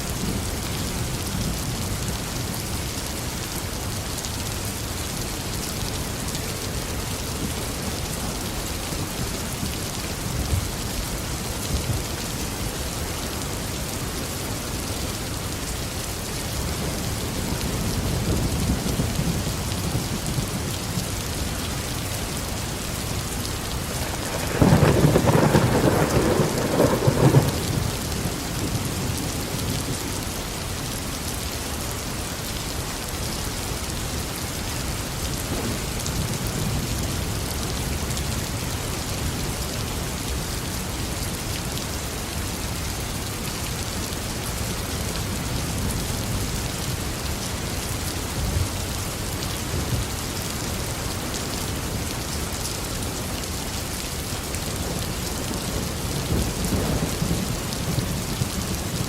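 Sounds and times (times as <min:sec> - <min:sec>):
steady rain falling: 0:00.0 - 0:59.0
thunder rumbling: 0:23.8 - 0:30.0, 0:55.5 - 0:59.0.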